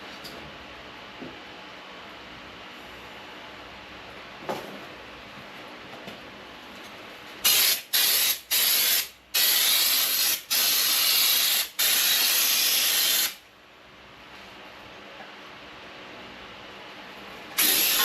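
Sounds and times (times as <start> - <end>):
spray gun hissing: 17.6 - 18.0.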